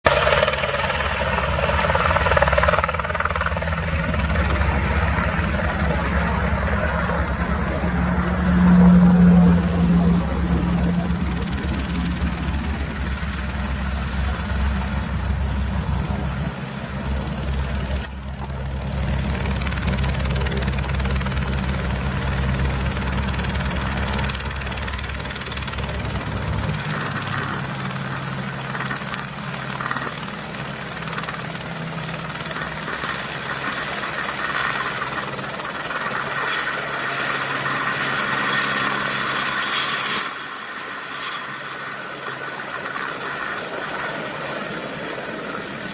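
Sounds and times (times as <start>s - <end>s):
helicopter rotor noise: 0.0s - 45.9s
helicopter turbine whine: 0.0s - 45.9s.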